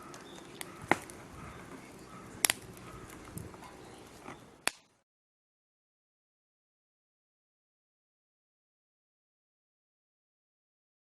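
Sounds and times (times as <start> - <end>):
campfire crackling: 0.0 - 5.0
sharp fire pops: 2.4 - 3.5.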